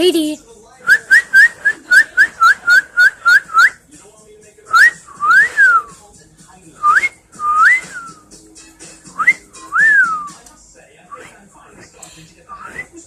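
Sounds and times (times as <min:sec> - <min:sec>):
pet bird whistling: 0:01.0 - 0:03.8.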